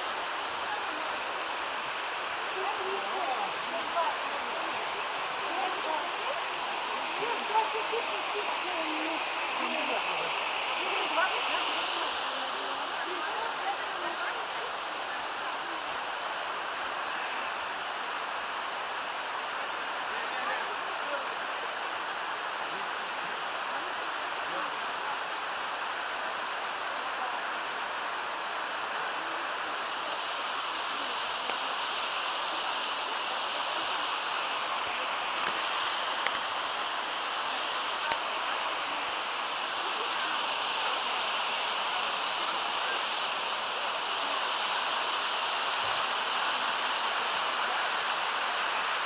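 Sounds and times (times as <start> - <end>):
creek rushing over waterfalls: 0.0 - 49.0.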